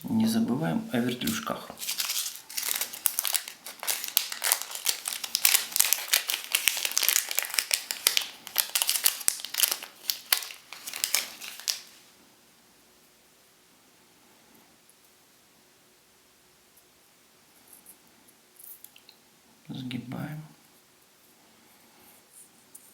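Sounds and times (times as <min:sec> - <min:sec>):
plastic packaging crinkling: 0:01.2 - 0:12.1.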